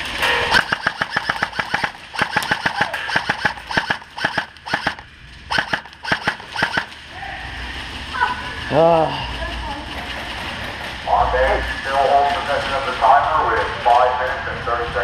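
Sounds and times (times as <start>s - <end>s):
airsoft gun full-auto bursts: 0.5s - 7.0s.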